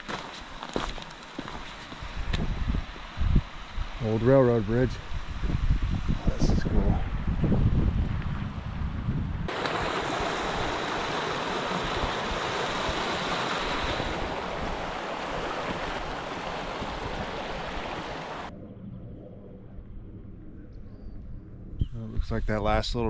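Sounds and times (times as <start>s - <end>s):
river water rushing over rapids: 9.5s - 18.5s.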